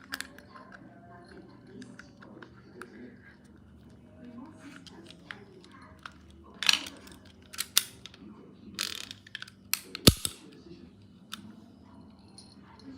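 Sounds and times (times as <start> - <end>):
revolver mechanical clicks: 8.8 - 10.4.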